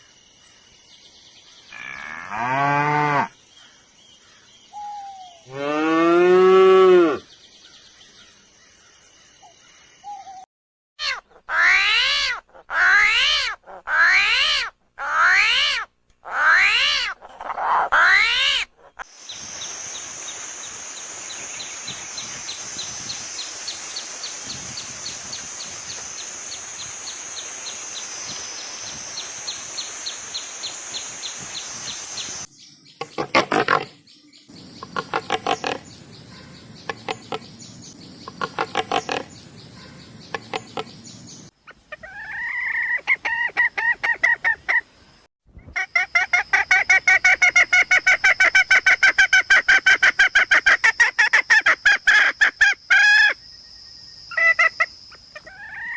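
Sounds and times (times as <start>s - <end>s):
high-pitched buzz with ticks: 34.6s - 36.2s, 36.8s - 39.5s, 40.2s - 41.2s.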